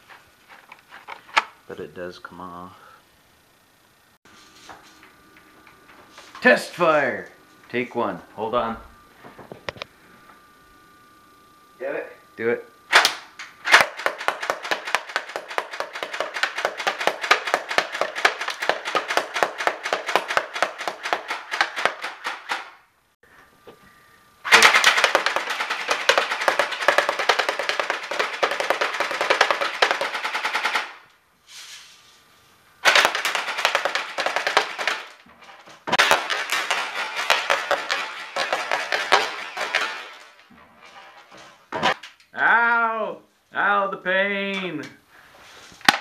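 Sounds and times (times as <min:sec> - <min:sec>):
airsoft rifle automatic fire: 0:12.9 - 0:22.7, 0:24.5 - 0:31.0, 0:32.8 - 0:35.2, 0:35.9 - 0:40.4.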